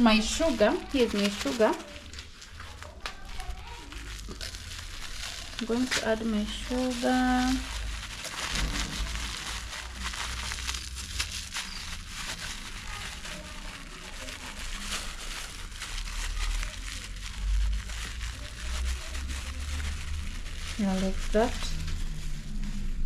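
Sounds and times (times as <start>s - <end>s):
packet crinkling and rustling: 0.0s - 23.0s
sugar pouring: 0.0s - 23.0s
low rumble: 17.3s - 23.0s.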